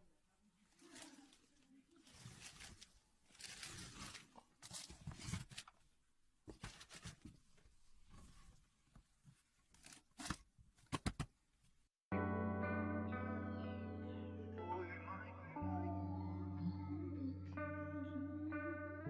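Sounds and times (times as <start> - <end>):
crinkling and tearing: 0.8 - 5.8, 9.6 - 10.5
music on a sustained chord: 12.1 - 19.0.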